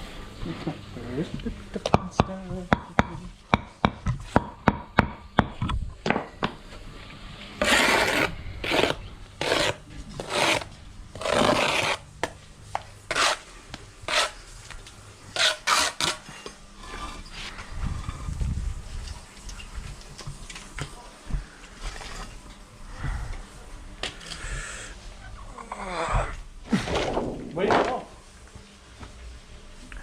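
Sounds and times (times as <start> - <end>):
trowel scraping mortar on blocks: 7.6 - 12.4, 13.1 - 13.5, 14.1 - 14.4, 15.3 - 17.3.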